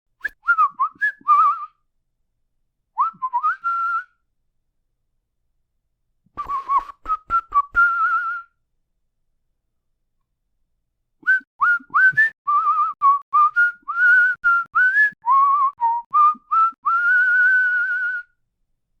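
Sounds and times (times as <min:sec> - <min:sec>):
person whistling: 0:00.2 - 0:01.8, 0:03.0 - 0:04.2, 0:06.4 - 0:08.6, 0:11.2 - 0:18.4.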